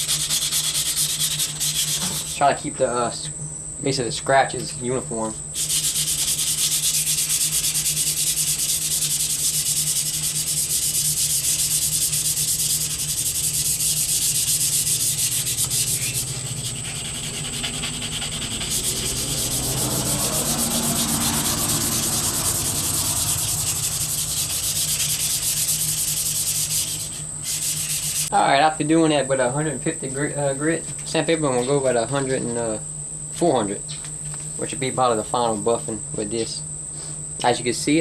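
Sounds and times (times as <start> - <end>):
sandpaper scraping metal blade: 0.0 - 2.6, 5.6 - 28.3.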